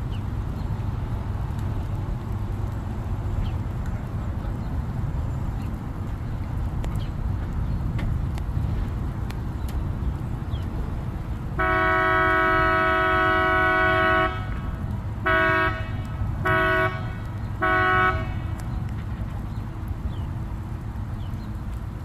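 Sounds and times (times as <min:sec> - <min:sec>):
boat horn blasts: 0:11.6 - 0:18.6.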